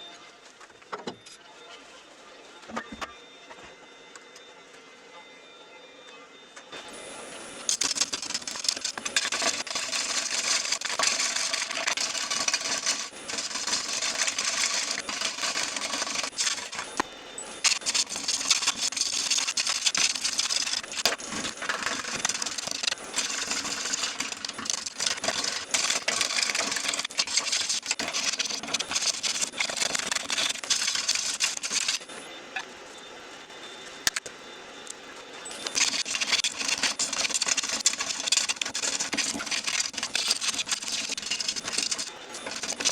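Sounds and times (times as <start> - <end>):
lathe motor running: 6.8 - 32.2, 35.6 - 42.9
rasping hiss on spinning wood: 7.7 - 17.0.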